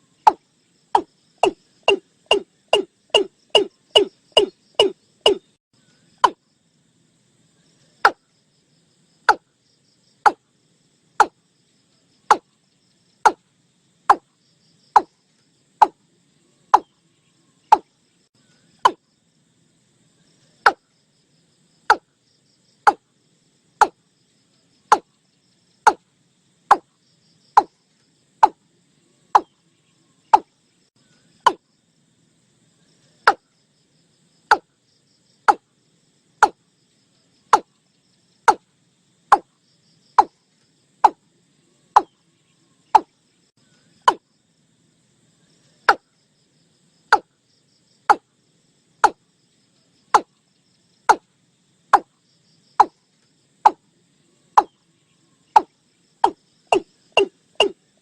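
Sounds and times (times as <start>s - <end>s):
faint insect hum: 0.0s - 58.0s
bird calling sharp notes: 1.0s - 5.5s, 55.6s - 57.8s.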